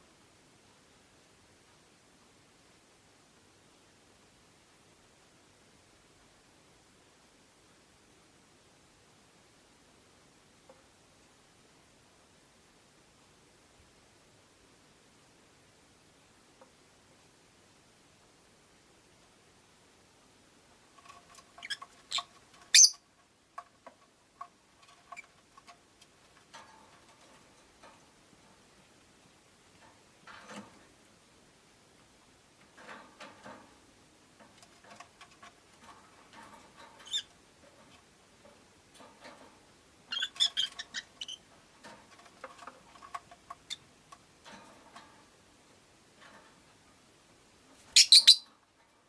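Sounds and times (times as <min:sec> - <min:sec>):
lovebirds chirping: 0:21.6 - 0:23.0, 0:40.1 - 0:41.4, 0:47.9 - 0:48.5.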